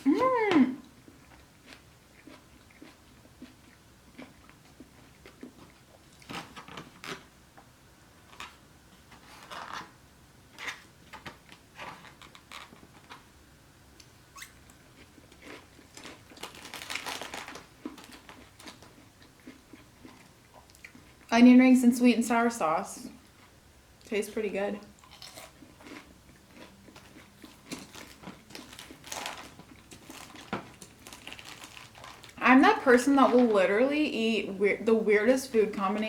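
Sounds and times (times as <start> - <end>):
chewing: 0.8 - 7.2, 14.4 - 21.3, 25.0 - 32.4
crunching onion rings: 1.0 - 7.3, 14.0 - 21.2, 25.0 - 32.5.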